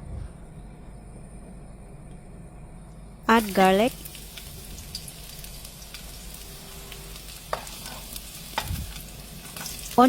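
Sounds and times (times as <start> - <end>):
garlic sizzling in oil: 3.3 - 10.0.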